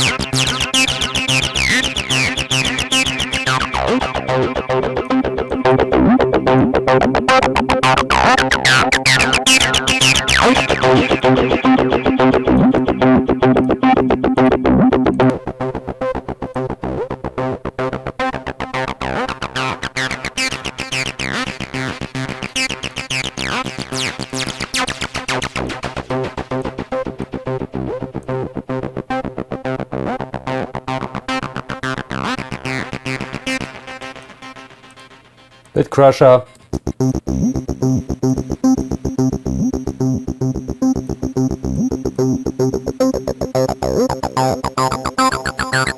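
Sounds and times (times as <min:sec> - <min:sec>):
distorted acid synth bass line: 0:00.0 - 0:35.2, 0:36.5 - 0:45.9.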